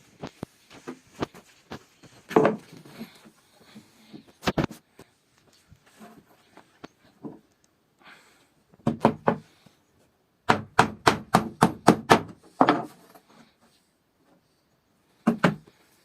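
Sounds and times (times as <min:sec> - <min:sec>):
hammer striking wood: 0:08.8 - 0:09.4, 0:10.4 - 0:12.9, 0:15.2 - 0:15.6.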